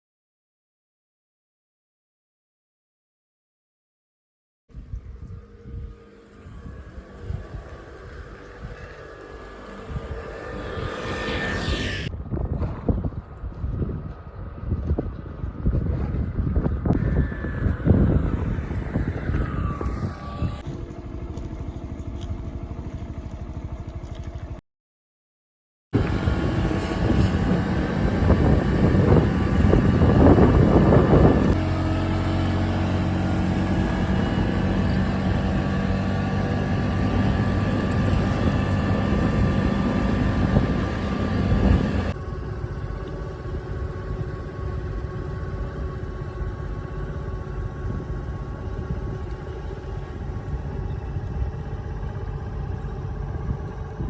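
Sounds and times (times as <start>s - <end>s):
vehicle engine running: 4.9s - 12.1s, 26.0s - 54.0s.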